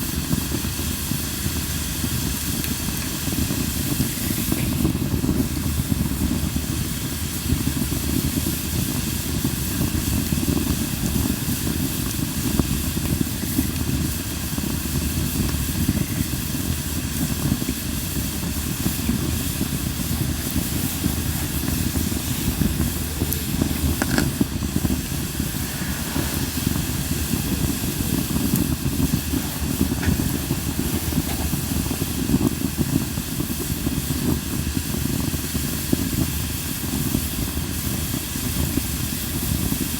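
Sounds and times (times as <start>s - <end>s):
campfire flames hissing: 0.0s - 39.9s
wood popping: 18.3s - 34.3s.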